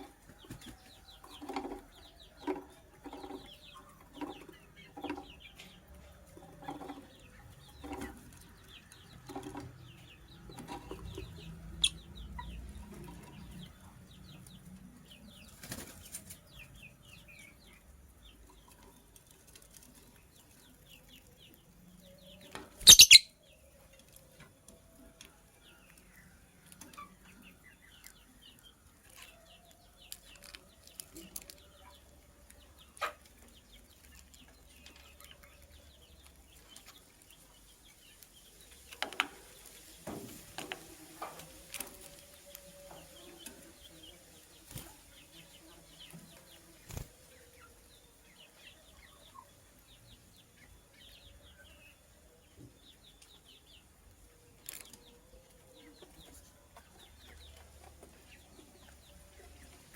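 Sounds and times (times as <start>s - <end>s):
birds chirping: 0.0s - 59.9s.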